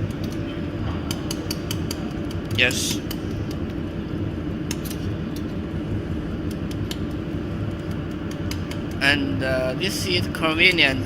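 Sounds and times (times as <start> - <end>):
light clicks: 6.4 - 9.0.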